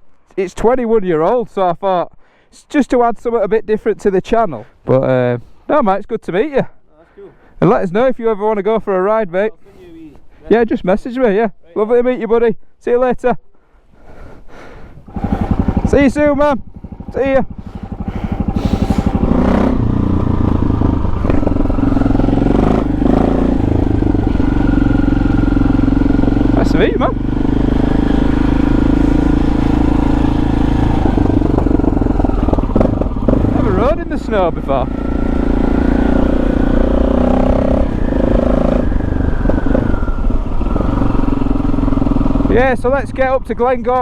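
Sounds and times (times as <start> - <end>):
motorcycle engine running: 15.0 - 44.0.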